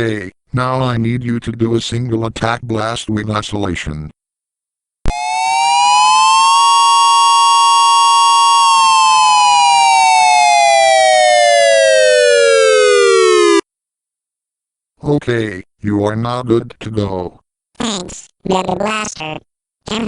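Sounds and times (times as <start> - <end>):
tornado siren winding: 5.1 - 13.6.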